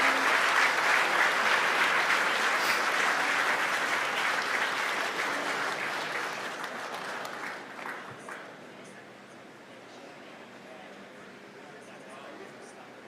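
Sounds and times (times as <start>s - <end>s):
crowd applauding and cheering: 0.0s - 8.6s.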